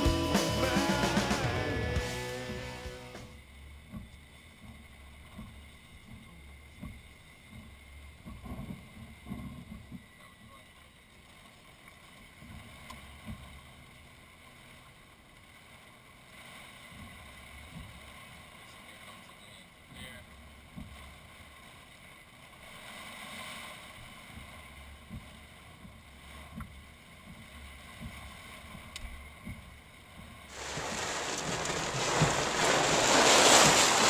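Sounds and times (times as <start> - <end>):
wind gusting on microphone: 30.5 - 34.0.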